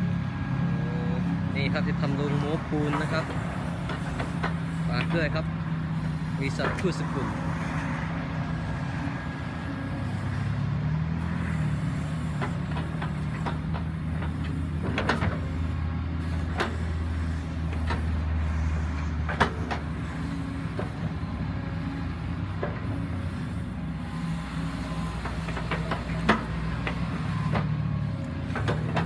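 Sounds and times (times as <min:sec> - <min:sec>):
diesel engine running: 0:00.0 - 0:29.0
sharp knocks and clanks: 0:02.4 - 0:05.5, 0:12.2 - 0:15.6, 0:16.3 - 0:21.1, 0:25.0 - 0:29.0.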